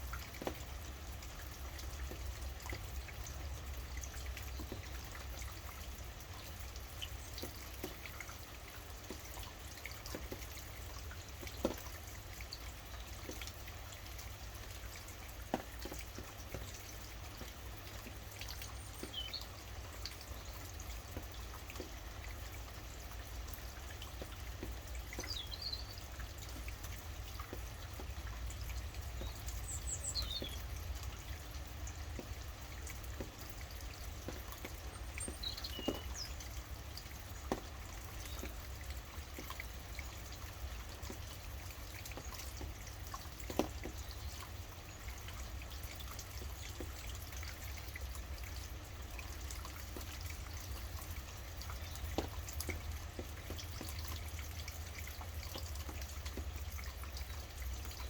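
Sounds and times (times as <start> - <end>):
drips ticking: 0.0 - 58.0
steady rainfall: 0.0 - 58.0
bird chirping: 29.2 - 30.6, 35.0 - 36.4.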